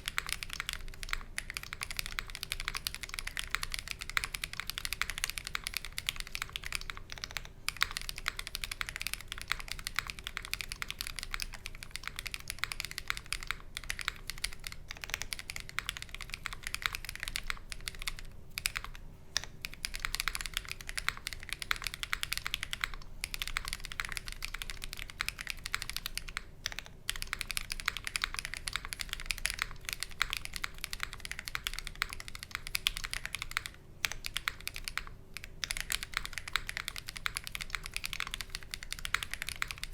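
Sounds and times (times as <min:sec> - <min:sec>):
typing on mechanical keyboard: 0:00.0 - 0:39.9.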